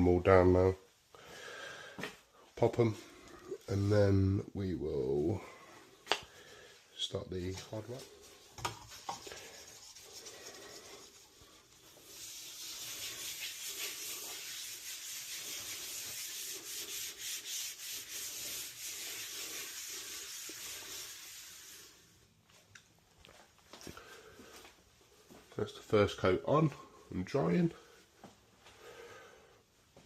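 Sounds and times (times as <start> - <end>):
applicator rubbing on wood: 8.8 - 21.8.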